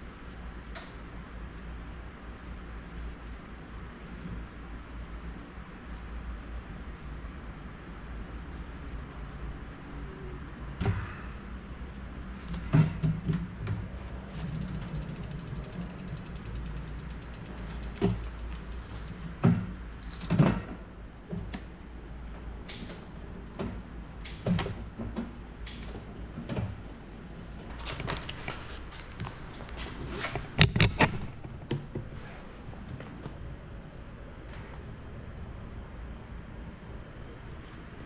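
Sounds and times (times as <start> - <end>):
bike knocks and clunks: 12.5 - 20.8
bicycle freehub ticking: 14.3 - 19.4.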